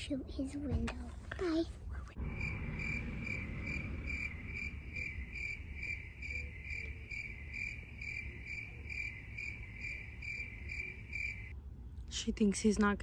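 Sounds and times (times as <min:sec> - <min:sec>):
low background rumble: 0:01.7 - 0:13.0
cricket chirping: 0:02.2 - 0:11.5.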